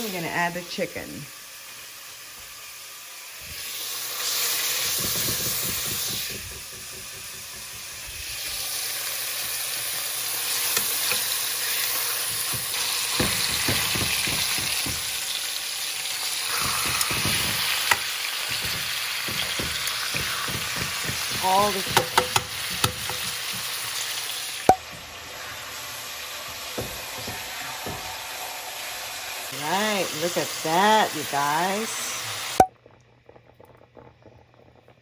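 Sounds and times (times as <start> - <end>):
chicken sizzling in hot oil: 0.0 - 32.7
utensil knocking in a pan: 4.3 - 25.2, 26.4 - 28.4.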